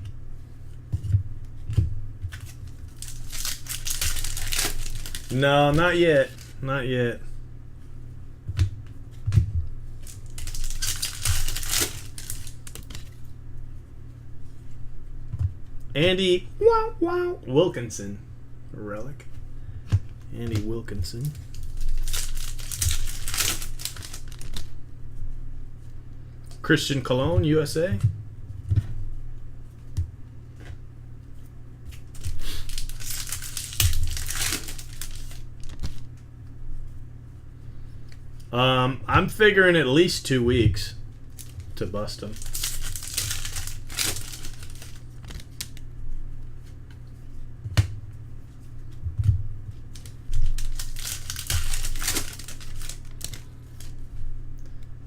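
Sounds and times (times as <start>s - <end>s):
wrapper rustling and crinkling: 2.3s - 6.6s, 10.0s - 13.3s, 21.1s - 24.8s, 31.9s - 36.1s, 41.2s - 45.9s, 49.7s - 54.2s.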